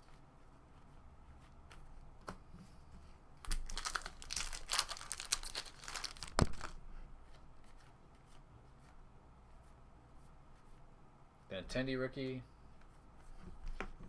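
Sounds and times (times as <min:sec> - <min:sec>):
plastic wrapper crinkling and tearing: 0:03.4 - 0:06.8.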